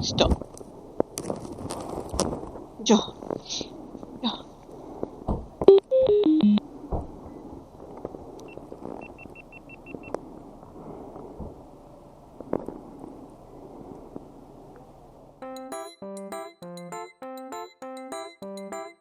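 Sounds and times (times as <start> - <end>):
steady low hiss: 0.0 - 15.6
descending electronic tones: 5.7 - 6.6
short high beeps: 5.7 - 6.6.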